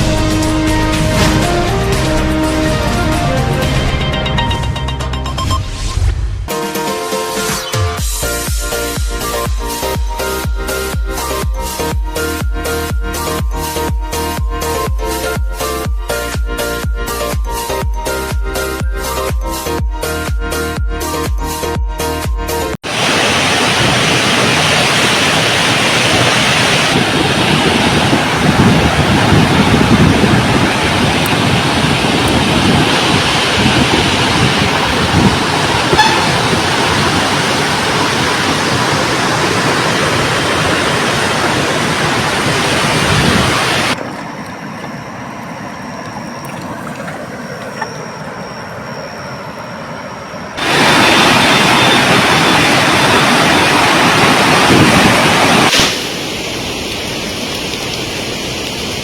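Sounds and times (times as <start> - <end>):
rushing floodwater roar: 0.0 - 4.7, 22.8 - 59.0.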